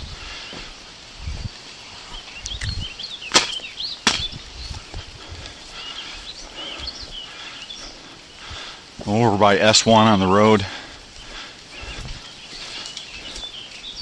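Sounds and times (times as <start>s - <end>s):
birds chirping: 0.0s - 14.0s
sharp cracks: 2.5s - 4.4s.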